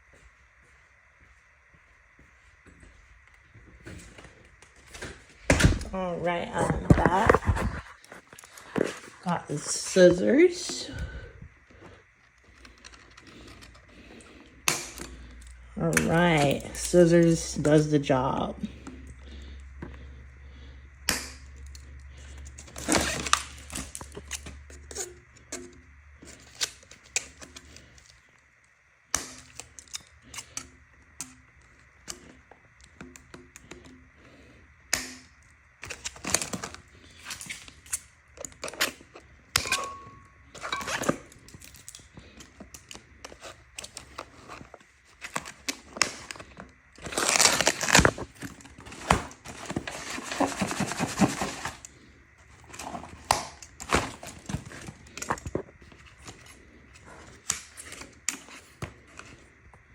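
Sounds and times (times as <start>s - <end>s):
packaging rustling: 3.9s - 10.2s, 35.8s - 59.6s.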